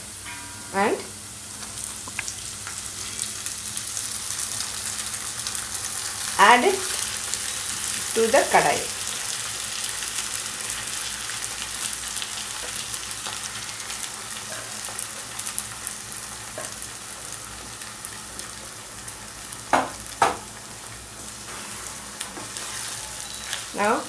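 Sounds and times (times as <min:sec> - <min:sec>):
food sizzling in oil: 0:00.0 - 0:24.0.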